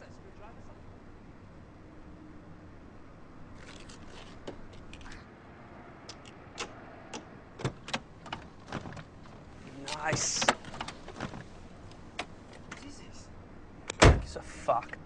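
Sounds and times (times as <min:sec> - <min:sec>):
faint background noise: 0:00.0 - 0:15.0
irregular clicks and knocks: 0:06.1 - 0:12.8.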